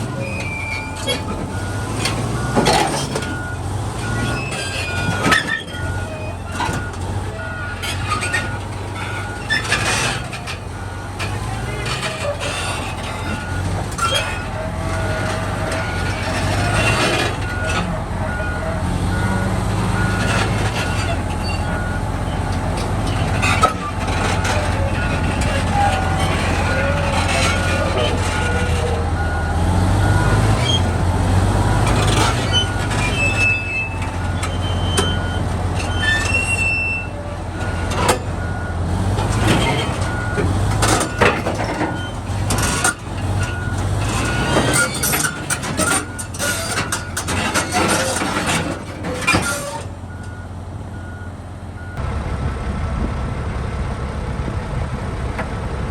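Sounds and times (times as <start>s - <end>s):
diesel engine drone: 0.0s - 55.9s
reversing alarm beeping: 0.1s - 11.1s, 13.2s - 22.1s, 23.6s - 31.1s, 31.7s - 38.8s, 39.5s - 42.2s, 49.2s - 52.0s.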